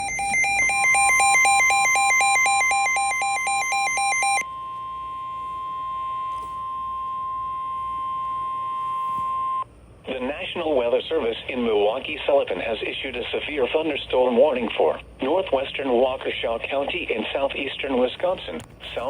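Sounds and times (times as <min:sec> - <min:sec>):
rapid electronic beeping: 0:00.0 - 0:09.6
high alarm tone: 0:00.0 - 0:09.7.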